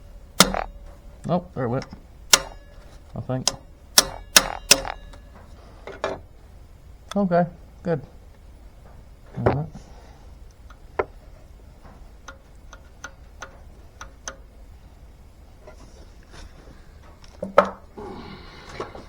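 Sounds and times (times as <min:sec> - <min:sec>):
loud metal clank: 0:00.0 - 0:01.2, 0:02.3 - 0:05.5
short metal rattle: 0:00.0 - 0:01.2, 0:02.2 - 0:05.5
metal tools clicking and tapping: 0:00.2 - 0:06.2, 0:11.8 - 0:14.5.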